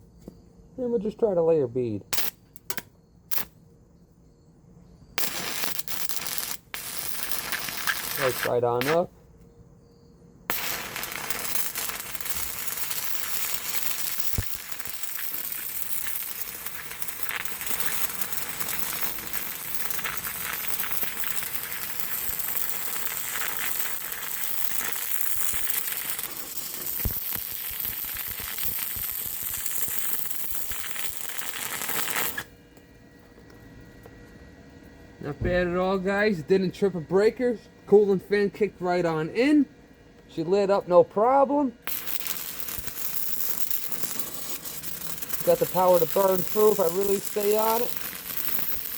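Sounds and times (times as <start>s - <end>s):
welding arc crackling: 2.1s - 3.6s, 5.2s - 9.1s, 10.5s - 32.5s, 41.5s - 48.9s.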